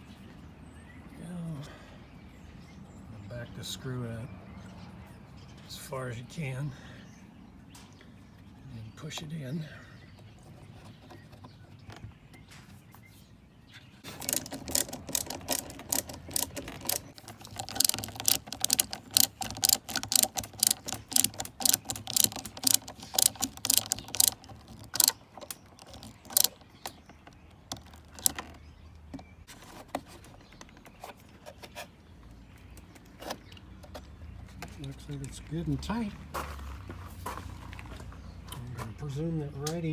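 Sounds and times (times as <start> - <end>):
rapid ratcheting clicks: 14.0 - 28.6.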